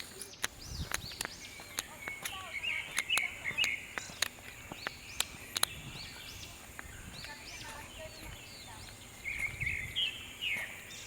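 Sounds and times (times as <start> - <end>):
sharp clicks: 0.0 - 7.4
birds chirping and calling: 0.0 - 11.0.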